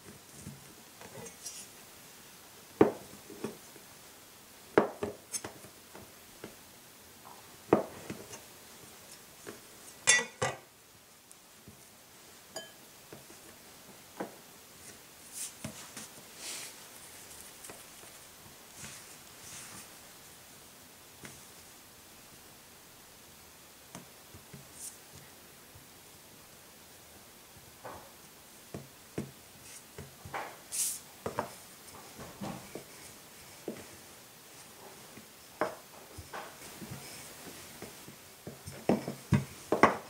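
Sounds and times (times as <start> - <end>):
utensils and dishes clinking: 10.0 - 10.6, 12.6 - 12.8.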